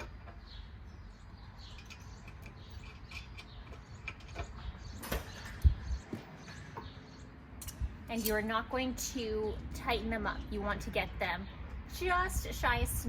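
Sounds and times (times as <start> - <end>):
metal bolts and nuts clicking: 1.6 - 5.6, 7.6 - 8.7.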